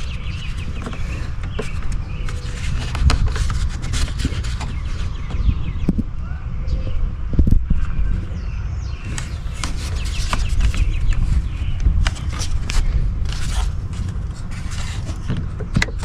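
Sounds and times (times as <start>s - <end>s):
plastic scraping: 0.0s - 5.6s, 9.0s - 16.0s
steady low rumble: 0.0s - 16.0s.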